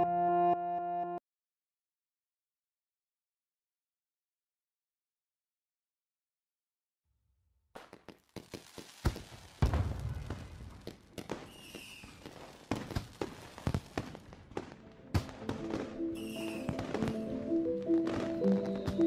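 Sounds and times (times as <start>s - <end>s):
fireworks popping and crackling: 7.8s - 19.0s
firework whistle: 11.4s - 12.3s, 16.1s - 17.0s, 18.3s - 19.0s
lo-fi music: 15.0s - 19.0s.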